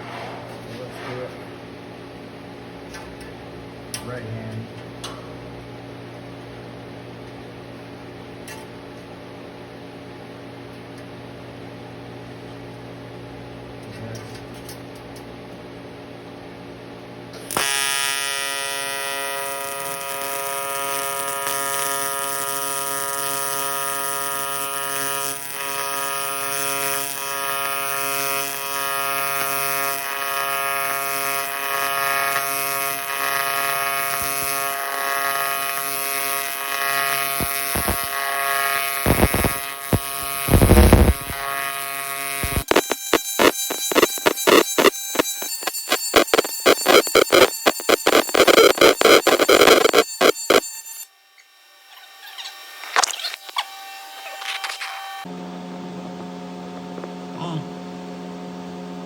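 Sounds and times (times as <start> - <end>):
welding arc buzzing: 17.5 - 57.6
sharp crackles: 35.6 - 41.6, 42.4 - 50.7, 52.2 - 53.7
low machine hum: 53.6 - 59.0.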